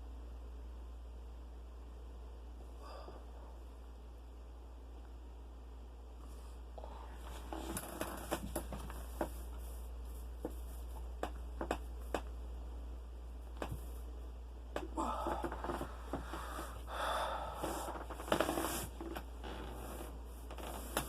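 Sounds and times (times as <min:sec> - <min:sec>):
soft rustling of movement: 0:06.2 - 0:12.4, 0:13.4 - 0:21.0.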